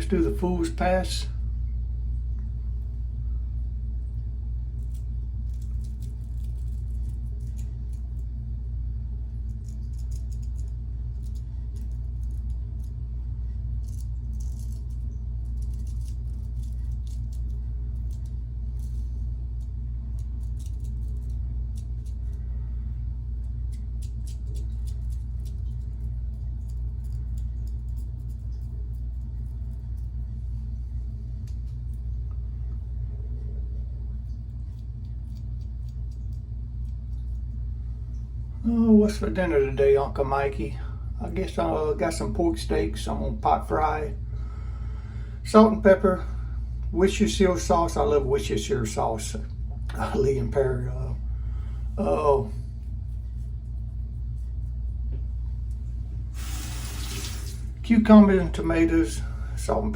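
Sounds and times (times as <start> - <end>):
steady low rumble: 0.0 - 59.9
razor scraping stubble: 55.5 - 57.8.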